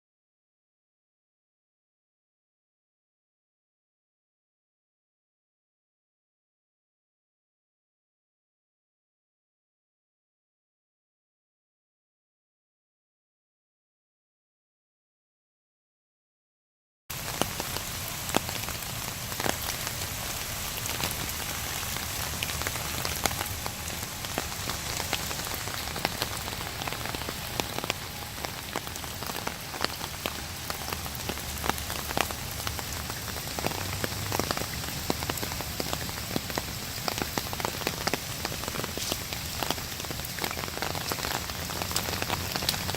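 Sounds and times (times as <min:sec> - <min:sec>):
rain drops pattering: 0:17.1 - 0:42.9.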